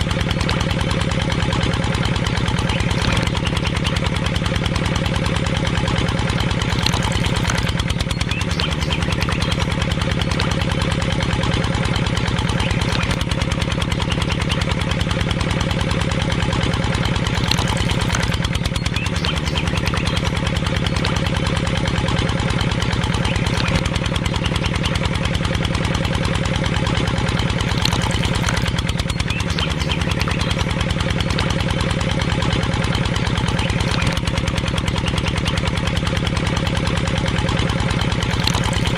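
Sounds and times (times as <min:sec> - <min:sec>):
small engine running: 0:00.0 - 0:38.9.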